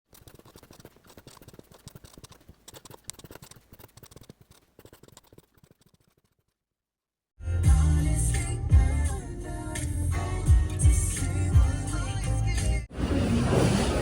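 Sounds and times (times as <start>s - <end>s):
rapid irregular clicking: 0.0s - 6.6s.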